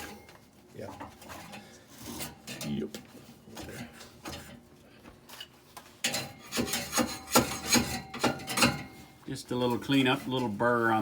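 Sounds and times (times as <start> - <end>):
metal scraping and rasping: 6.0 - 11.0.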